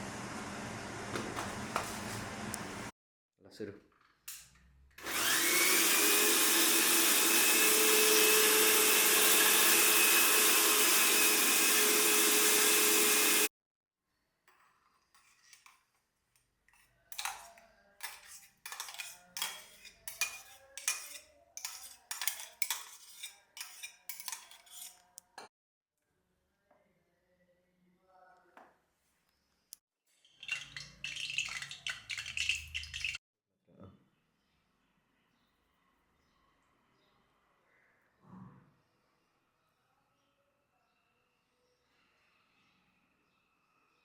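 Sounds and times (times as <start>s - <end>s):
quick knocks and scrapes: 1.1s - 2.3s
electric mixer grinder running: 5.0s - 13.5s.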